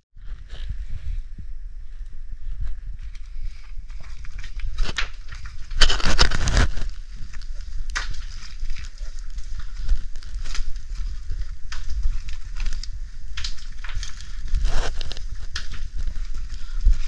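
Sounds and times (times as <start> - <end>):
body and gear scraping on rock: 3.7 - 17.0.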